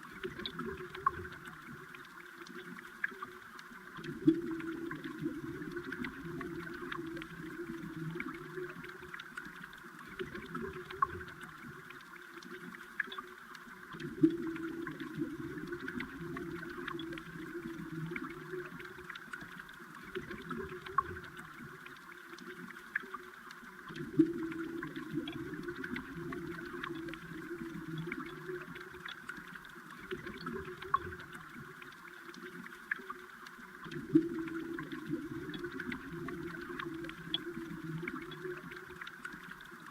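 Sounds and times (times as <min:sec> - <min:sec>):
faint underwater clicks: 0:00.0 - 0:39.9
underwater stream gurgling: 0:00.0 - 0:39.9.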